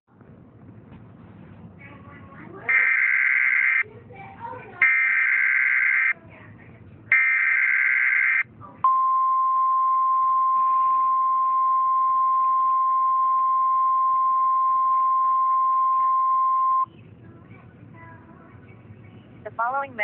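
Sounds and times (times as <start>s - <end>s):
steady attention tone: 2.7s - 3.8s, 4.8s - 6.2s, 7.1s - 16.9s
warbling digital data screech: 2.7s - 3.8s, 4.8s - 6.2s, 7.2s - 8.4s.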